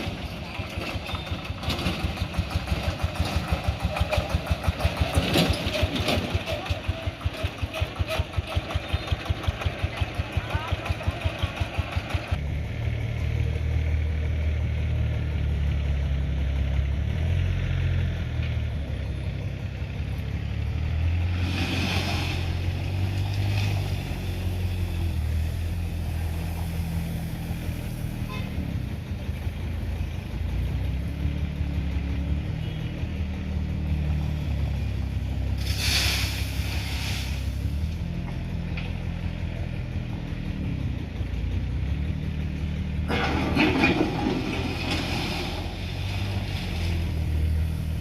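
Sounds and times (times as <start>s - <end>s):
diesel engine knocking: 0.1s - 12.4s
brief hiss: 35.6s - 37.6s.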